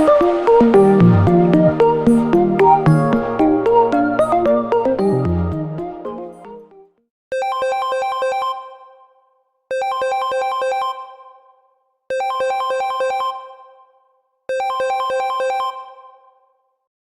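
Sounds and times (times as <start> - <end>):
phone ringtone electronic notes: 7.3 - 9.1, 9.7 - 11.5, 12.1 - 13.8, 14.5 - 16.4.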